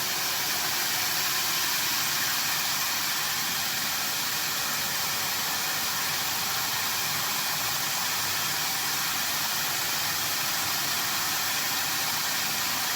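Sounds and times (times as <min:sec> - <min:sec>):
machine running with steady hiss: 0:00.0 - 0:12.9.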